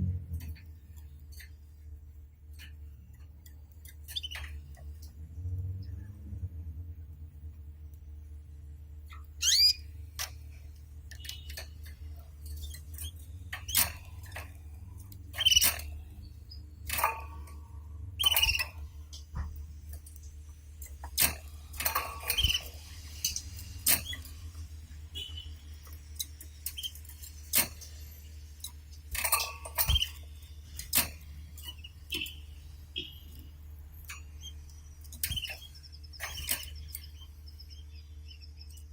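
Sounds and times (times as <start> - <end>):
canaries chirping: 3.8 - 4.8, 9.1 - 14.6, 15.2 - 17.6, 18.2 - 19.5, 20.9 - 38.9.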